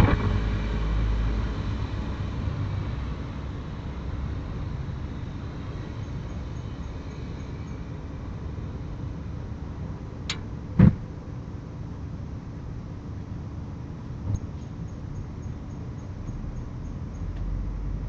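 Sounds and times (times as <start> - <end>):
heavy low bang: 0.0 - 2.3, 10.8 - 11.2
low background rumble: 0.0 - 18.0.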